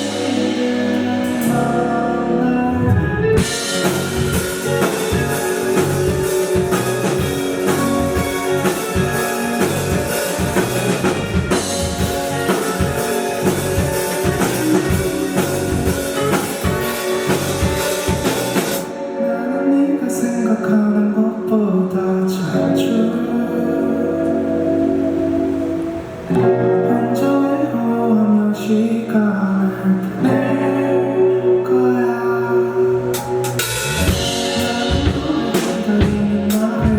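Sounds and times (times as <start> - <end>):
drum kit: 0.0 - 19.2, 33.0 - 36.9
guitars: 0.0 - 36.9
person singing: 0.0 - 36.9.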